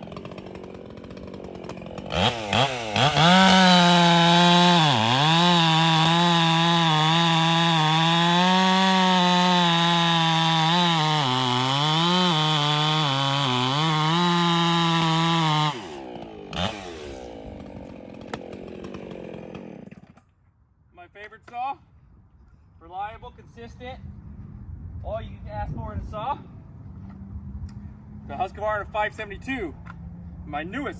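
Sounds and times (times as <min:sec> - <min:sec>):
chainsaw cutting wood: 0:00.0 - 0:20.4.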